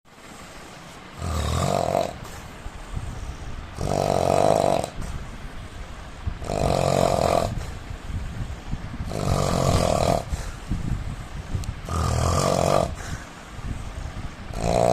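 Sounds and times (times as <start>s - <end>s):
rumbling breaths: 0.1s - 14.9s
man snoring: 1.1s - 2.4s, 3.8s - 5.1s, 6.4s - 7.8s, 9.0s - 10.6s, 11.8s - 13.2s, 14.5s - 14.9s.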